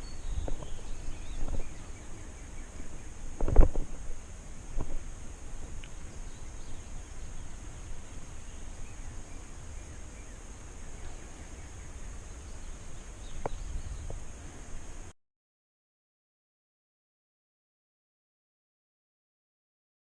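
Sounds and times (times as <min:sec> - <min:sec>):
faint bird chirps: 0:00.0 - 0:03.2, 0:05.9 - 0:14.6
low wind rumble: 0:00.0 - 0:15.1
insect drone: 0:00.0 - 0:15.2.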